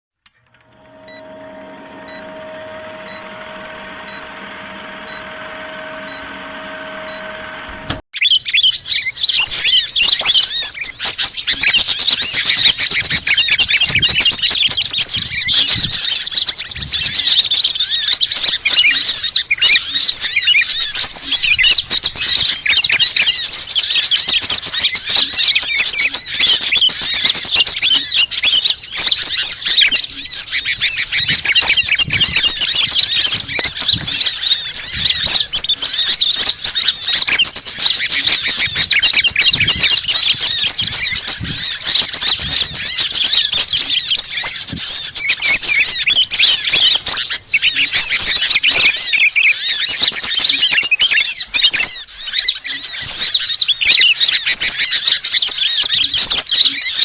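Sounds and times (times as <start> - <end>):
songbirds chirping and twittering: 0.2 - 57.0
steady humming tones: 0.3 - 8.0.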